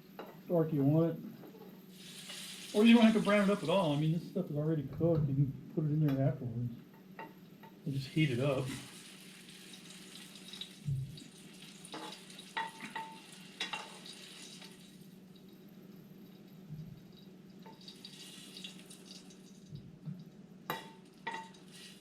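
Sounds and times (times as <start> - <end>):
sausage sizzling in a frying pan: 1.8 - 4.1, 7.9 - 19.7, 20.7 - 22.0
steady low hum: 3.6 - 8.8.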